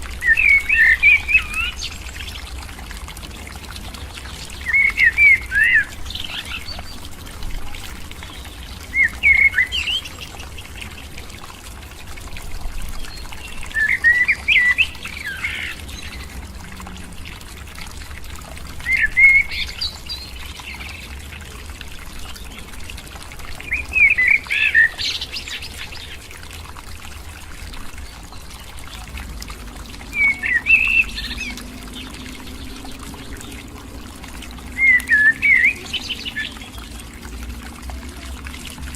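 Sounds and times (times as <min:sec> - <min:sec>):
bird chirping song: 0:07.7 - 0:11.0, 0:30.1 - 0:33.7, 0:34.7 - 0:36.9.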